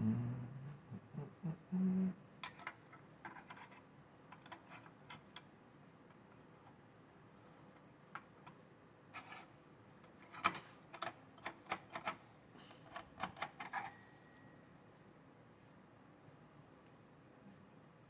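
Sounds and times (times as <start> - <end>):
brief metallic ring: 13.9 - 15.0.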